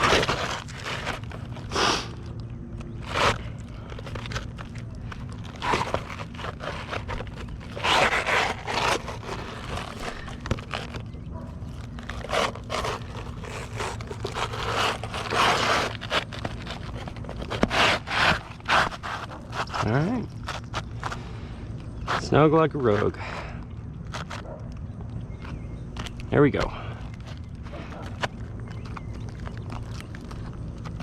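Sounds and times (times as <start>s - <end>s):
roof shingle scraping: 0.0s - 24.6s.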